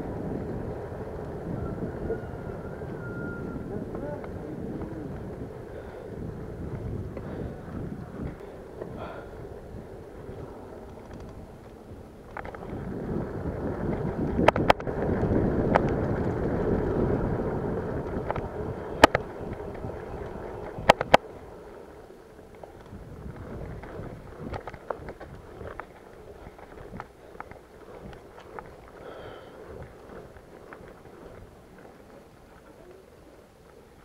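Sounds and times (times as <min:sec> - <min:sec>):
bike wheels rumbling: 0:00.0 - 0:34.0
wind buffeting microphone: 0:00.0 - 0:34.0
sharp clicks and rattles: 0:10.8 - 0:12.8, 0:13.8 - 0:17.2, 0:17.9 - 0:21.3.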